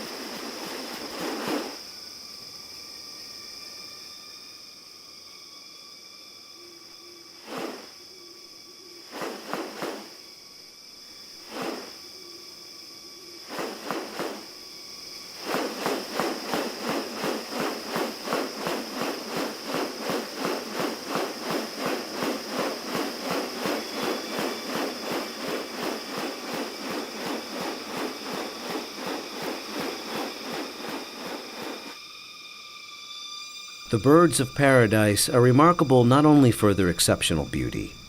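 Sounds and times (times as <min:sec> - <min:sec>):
high insect drone: 0:00.0 - 0:38.0
short sweeping sounds: 0:07.4 - 0:08.0, 0:09.1 - 0:10.2, 0:11.4 - 0:12.0, 0:13.5 - 0:14.6, 0:15.4 - 0:32.0
rapid even pulsing: 0:09.1 - 0:10.2, 0:11.5 - 0:12.0, 0:13.5 - 0:14.6, 0:15.3 - 0:32.0.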